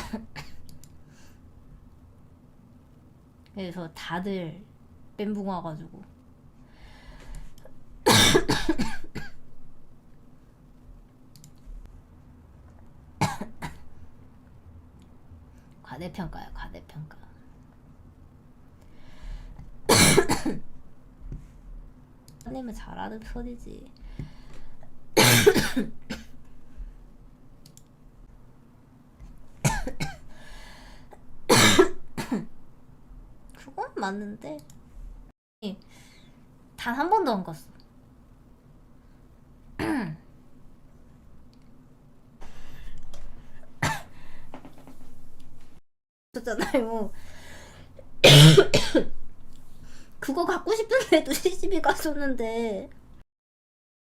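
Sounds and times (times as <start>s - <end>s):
woman coughing: 0.0s - 0.6s, 8.0s - 9.4s, 13.2s - 13.8s, 19.9s - 20.6s, 25.2s - 26.3s, 29.6s - 30.3s, 31.5s - 32.5s, 39.8s - 40.2s, 43.8s - 44.1s, 46.5s - 47.0s, 48.2s - 49.2s.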